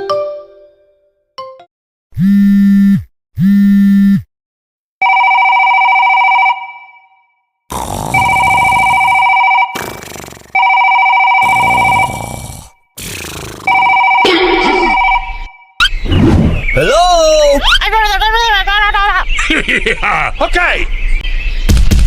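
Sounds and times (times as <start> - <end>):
electronic telephone ring: 5.0 - 6.8, 9.2 - 9.8, 10.6 - 12.0, 13.8 - 15.5
telephone buzzes: 8.2 - 12.5, 13.7 - 15.5.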